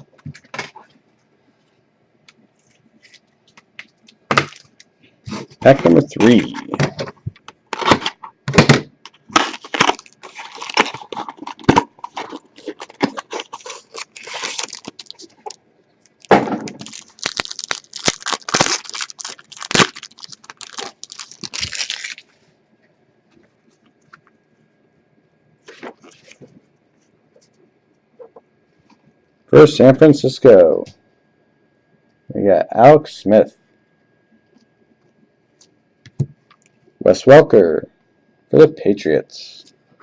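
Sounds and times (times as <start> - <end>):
card pack wrapper crinkling: 7.7 - 8.3, 9.1 - 22.3.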